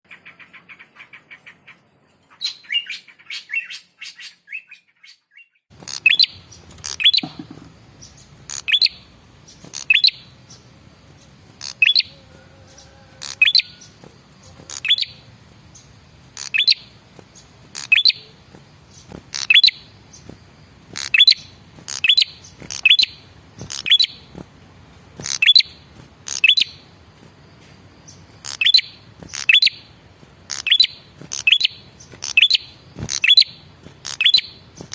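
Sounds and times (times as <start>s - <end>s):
bird calling: 0.1s - 24.5s, 25.1s - 26.9s, 28.0s - 34.9s
soft bird chirps: 0.1s - 34.9s.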